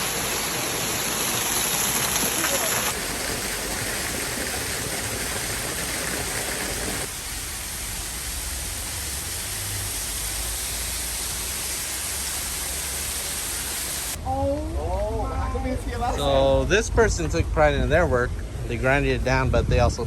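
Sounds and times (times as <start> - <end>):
water rushing down a cascade: 0.0 - 14.2.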